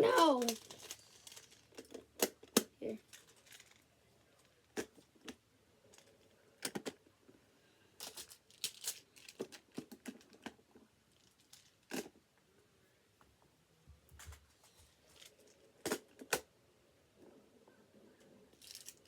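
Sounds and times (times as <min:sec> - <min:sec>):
plastic tiles clicking together: 0:00.2 - 0:03.8, 0:04.7 - 0:07.0.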